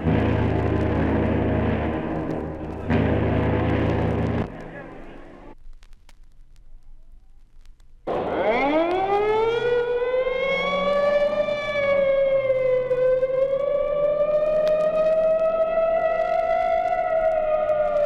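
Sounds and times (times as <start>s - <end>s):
siren wailing: 8.1s - 18.0s.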